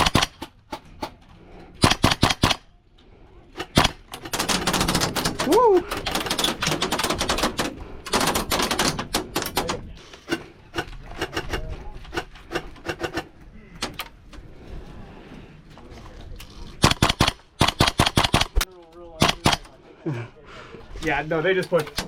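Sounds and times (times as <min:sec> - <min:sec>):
airsoft rifle firing bursts: 0:00.0 - 0:00.4, 0:01.8 - 0:02.6, 0:16.8 - 0:18.6.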